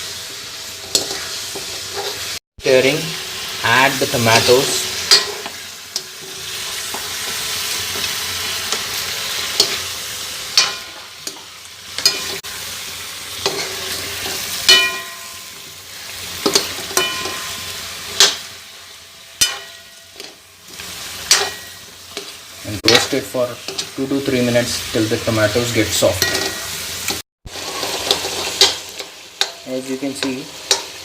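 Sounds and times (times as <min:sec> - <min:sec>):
food sizzling in hot oil: 0:00.0 - 0:31.0
spatula scraping a pan: 0:00.8 - 0:02.4, 0:05.0 - 0:18.5, 0:26.2 - 0:29.6.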